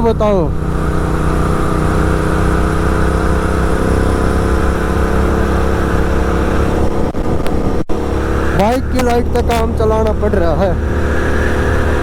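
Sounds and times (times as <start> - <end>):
motorcycle engine cruising: 0.0 - 12.0
wind and road noise: 0.0 - 12.0.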